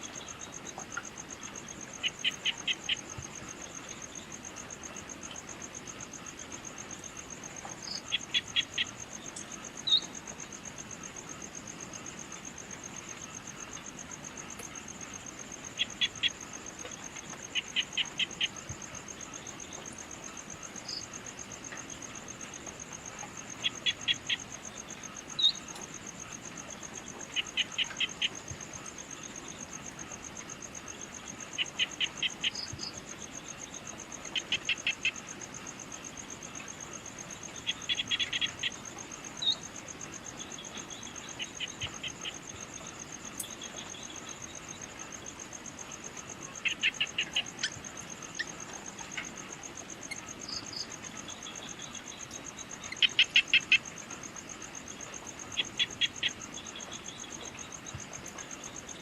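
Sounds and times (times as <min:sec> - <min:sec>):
crickets trilling: 0:00.0 - 0:59.0.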